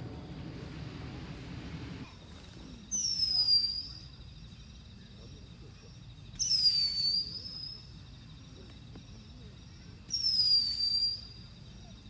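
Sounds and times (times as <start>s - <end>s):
high insect trill: 2.0s - 12.0s
high whistled call: 2.9s - 4.1s, 6.4s - 7.9s, 10.1s - 11.5s.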